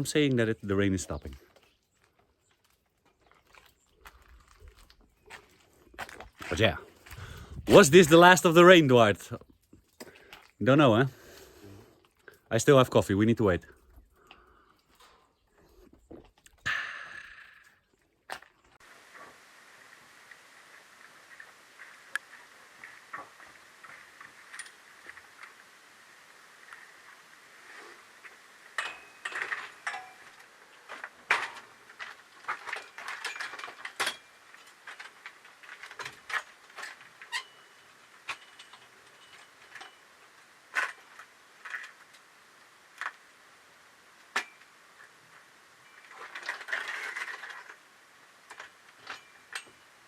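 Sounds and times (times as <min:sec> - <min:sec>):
rustling: 0:44.2 - 0:50.0.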